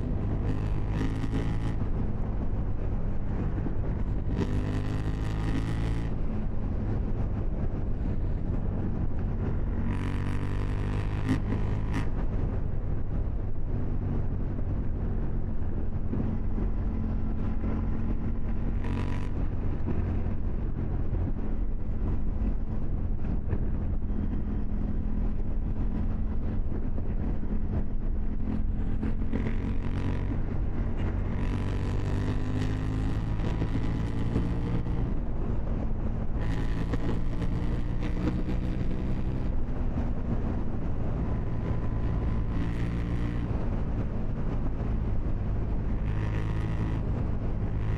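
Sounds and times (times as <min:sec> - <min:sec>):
motorcycle engine accelerating: 0:00.0 - 0:47.9.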